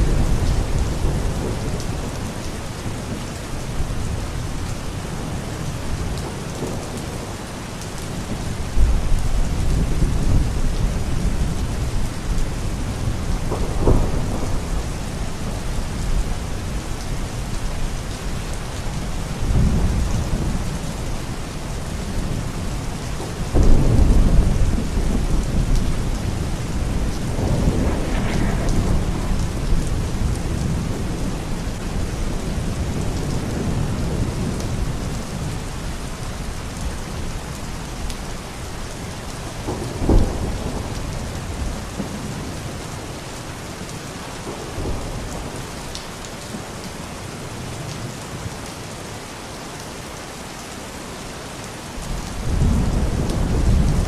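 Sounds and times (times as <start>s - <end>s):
rolling thunder: 0.0s - 7.2s, 8.0s - 17.8s, 19.2s - 42.9s, 52.0s - 54.0s
heavy rain: 0.0s - 54.0s
sharp thunderclap: 13.0s - 15.1s, 23.5s - 31.3s, 39.6s - 42.5s.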